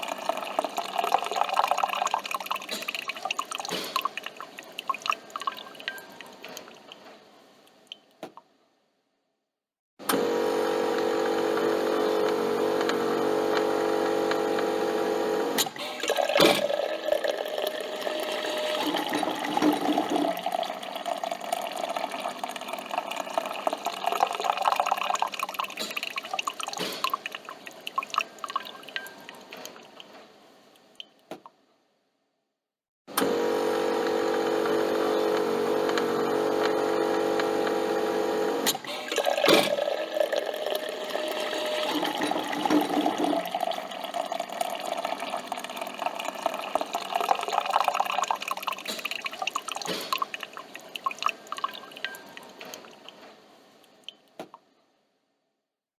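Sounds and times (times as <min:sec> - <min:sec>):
coffee machine humming: 0:00.0 - 0:02.7, 0:10.1 - 0:25.8, 0:33.1 - 0:51.8
gurgling and dripping liquid: 0:00.0 - 0:07.1, 0:15.5 - 0:30.2, 0:38.6 - 0:53.2.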